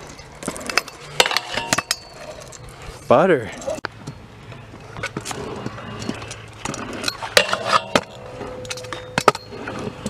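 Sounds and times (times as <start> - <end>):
scooter clacking on ramps: 0.4 - 2.3, 4.9 - 10.0
metallic ringing tone: 1.2 - 2.4, 7.0 - 9.9.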